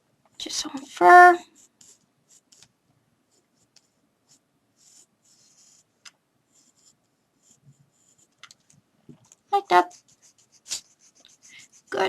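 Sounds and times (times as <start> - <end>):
pencil scratching on paper: 1.3 - 2.7, 3.3 - 8.3, 9.6 - 12.0.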